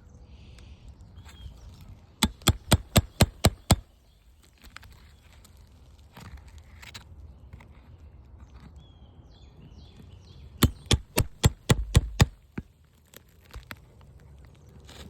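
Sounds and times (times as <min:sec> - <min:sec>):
hammer tapping on roof shingle: 0:02.2 - 0:03.8, 0:10.6 - 0:12.7.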